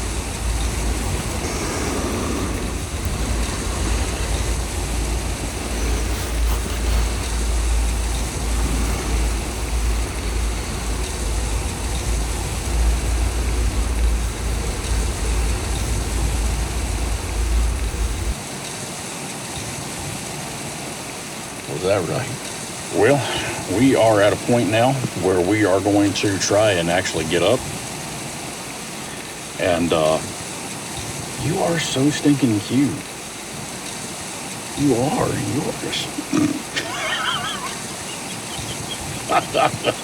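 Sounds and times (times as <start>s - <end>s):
deep wind buffeting rumble: 0.0s - 18.5s, 19.9s - 40.0s
wind rushing hiss: 0.0s - 40.0s.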